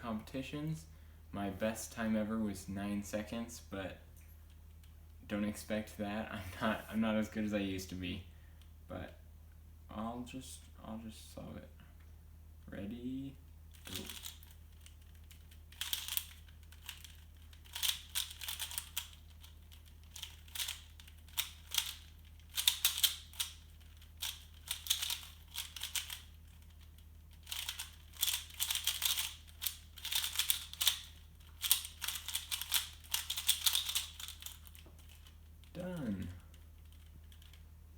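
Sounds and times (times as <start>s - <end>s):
plastic puzzle cube clicking: 13.8s - 35.3s.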